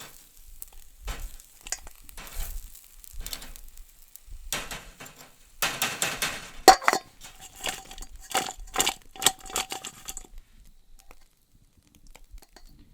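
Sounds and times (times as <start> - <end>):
metal utensil scraping cookware: 0.0 - 3.8, 4.6 - 10.3.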